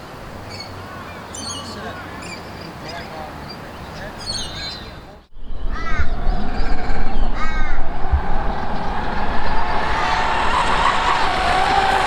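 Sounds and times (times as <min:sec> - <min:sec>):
low rumbling background noise: 0:03.2 - 0:12.0
crow cawing: 0:05.7 - 0:06.2, 0:07.4 - 0:07.8.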